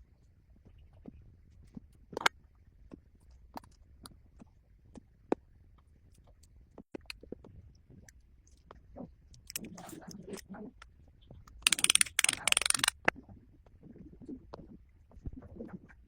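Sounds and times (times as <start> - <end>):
watch parts clicking and scraping: 9.4 - 10.0, 11.6 - 13.1
rapid fine clicks: 11.6 - 13.1.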